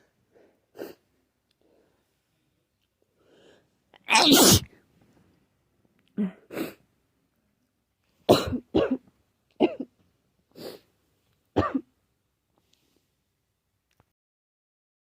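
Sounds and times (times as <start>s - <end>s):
person coughing: 4.1s - 4.7s, 8.3s - 9.0s, 11.6s - 11.9s.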